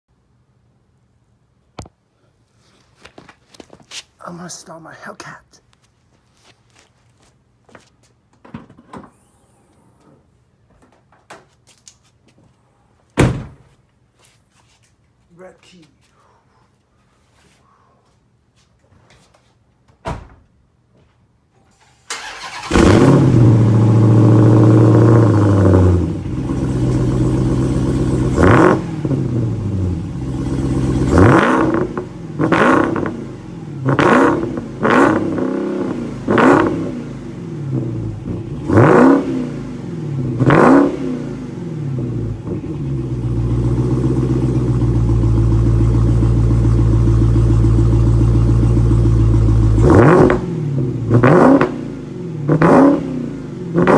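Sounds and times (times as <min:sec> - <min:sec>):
car engine starting and revving: 0:21.8 - 0:53.9.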